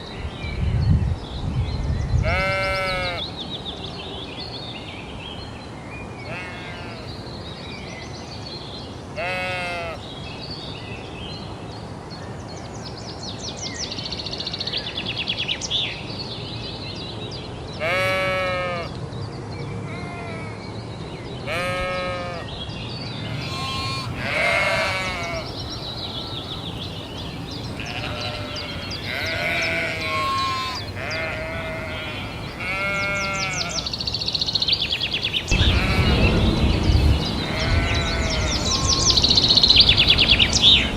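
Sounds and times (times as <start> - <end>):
steady background noise: 0.0 - 40.9
sheep bleating: 2.2 - 3.2, 6.3 - 7.1, 9.2 - 10.0, 17.8 - 18.9, 21.5 - 22.4, 23.2 - 25.5, 27.8 - 33.9, 35.5 - 36.4, 37.4 - 39.2.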